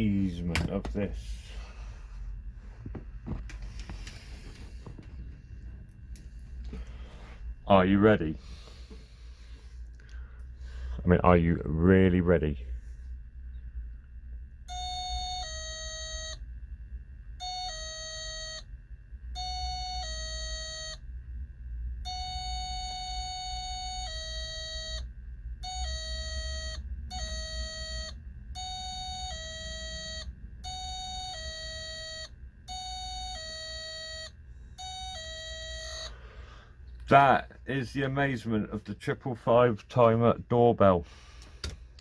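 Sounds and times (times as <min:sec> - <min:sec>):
electronic two-tone doorbell: 0:14.7 - 0:16.4, 0:17.4 - 0:18.7, 0:19.4 - 0:21.0, 0:22.0 - 0:36.2.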